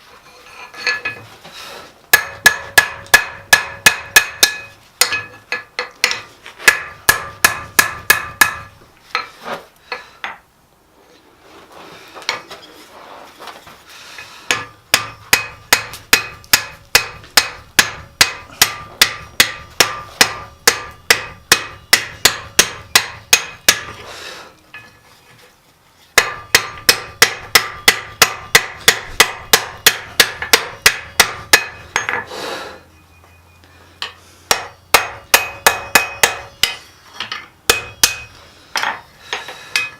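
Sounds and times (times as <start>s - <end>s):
hammer ringing on anvil: 2.1s - 8.8s, 14.5s - 23.9s, 26.2s - 32.3s, 34.0s - 39.0s.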